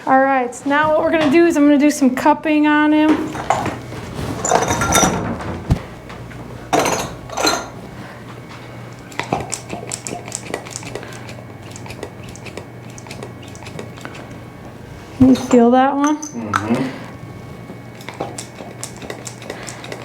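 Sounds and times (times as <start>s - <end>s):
cups clicking and clattering: 3.1s - 3.8s, 4.4s - 5.3s, 6.2s - 14.4s, 15.2s - 17.1s, 17.9s - 20.0s.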